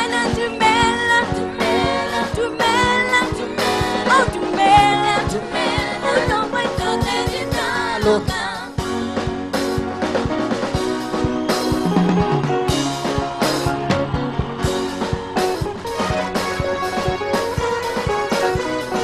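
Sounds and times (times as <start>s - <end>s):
singers performing gospel song: 0.0s - 9.4s
band playing: 0.0s - 19.0s
steady drum beat: 1.6s - 19.0s.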